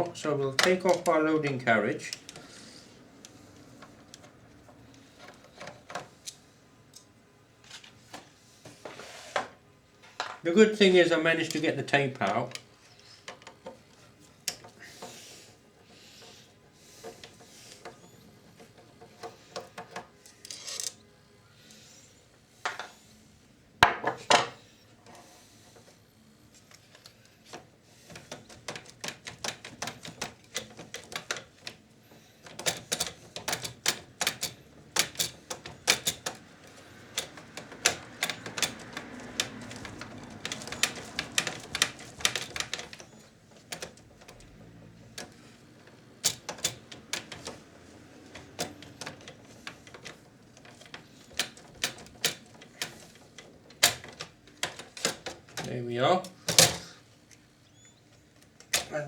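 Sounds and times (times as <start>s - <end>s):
small parts clicking and knocking: 26.8s - 55.7s.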